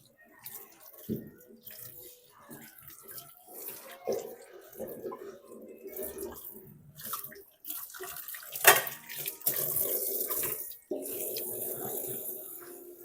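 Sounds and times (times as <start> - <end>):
tap water running into sink: 0.0 - 13.0.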